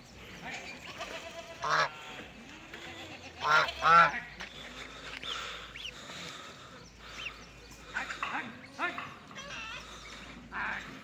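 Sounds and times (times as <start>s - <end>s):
duck quacking: 1.6s - 2.0s, 3.4s - 4.2s
ducklings peeping: 3.4s - 9.0s.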